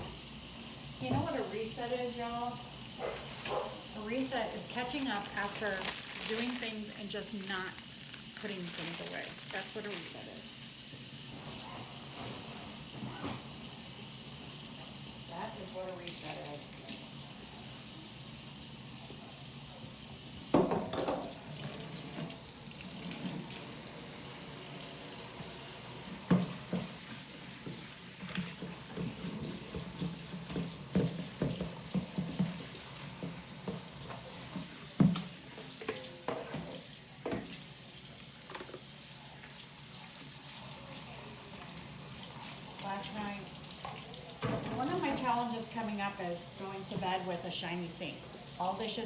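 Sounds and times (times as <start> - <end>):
tap running into a sink: 0.0 - 1.6, 20.3 - 24.2, 24.8 - 37.7, 38.4 - 40.3, 41.5 - 45.8
dishes clattering: 20.5 - 21.4, 34.6 - 37.6, 43.9 - 45.4
dishes clinking and knocking: 20.5 - 21.4, 35.0 - 37.6, 44.4 - 45.4.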